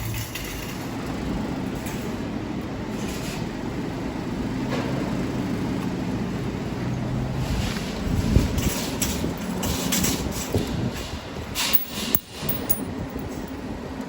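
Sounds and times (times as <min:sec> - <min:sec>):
short rattling clicks: 0:11.7 - 0:13.5.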